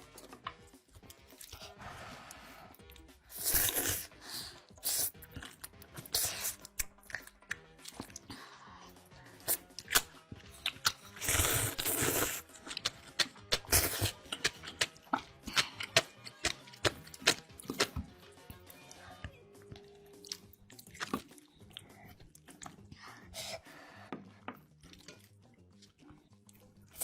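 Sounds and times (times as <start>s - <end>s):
crunchy chewing: 9.5s - 18.1s, 20.1s - 22.8s.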